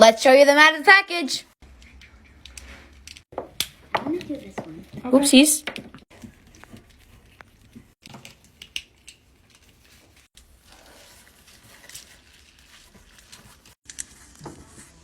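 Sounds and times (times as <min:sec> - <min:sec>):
soft packaging rustles: 0:09.1 - 0:15.0.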